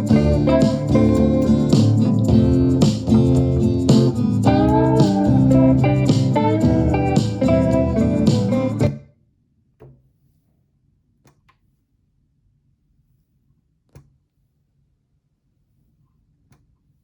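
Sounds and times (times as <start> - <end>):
music from stereo receiver: 0.0 - 9.0.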